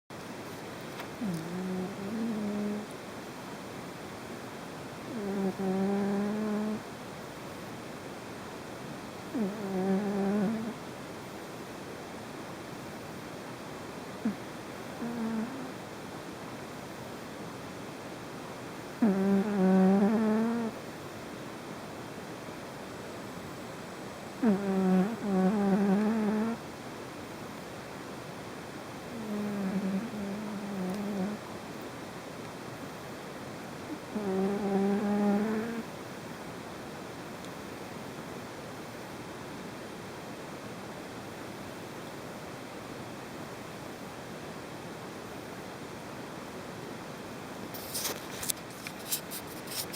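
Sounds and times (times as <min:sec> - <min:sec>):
steady background hiss: 0:00.1 - 0:49.9
long pitched snore: 0:01.2 - 0:02.8, 0:05.1 - 0:06.8, 0:09.4 - 0:10.8, 0:19.0 - 0:20.7, 0:24.4 - 0:26.6, 0:29.2 - 0:31.4, 0:34.0 - 0:35.9.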